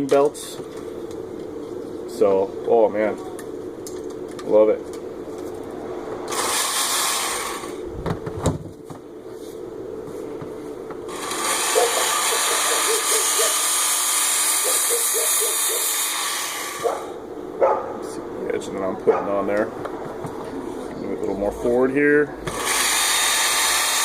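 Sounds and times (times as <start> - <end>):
belt sharpener grinding axe edge: 11.1 - 16.9.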